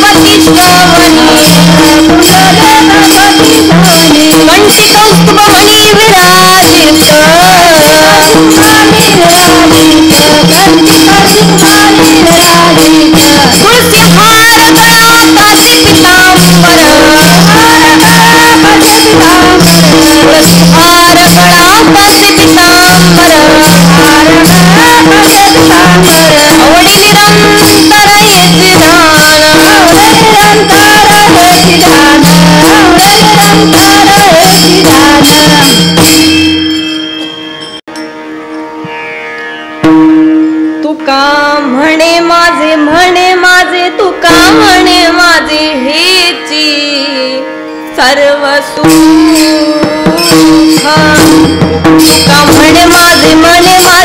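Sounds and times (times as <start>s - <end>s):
jingling cymbals: 0.0s - 38.8s, 48.8s - 54.0s
wavering melody: 0.0s - 42.2s.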